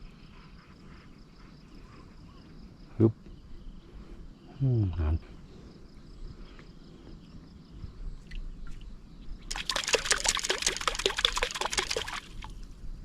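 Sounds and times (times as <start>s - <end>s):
water splashing hard: 9.5s - 12.5s.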